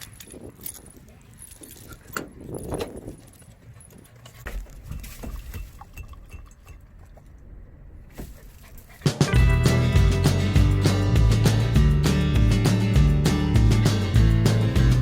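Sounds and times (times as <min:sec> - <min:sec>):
faint clinks and knocks: 0:00.0 - 0:07.5
guitar music: 0:09.1 - 0:15.0.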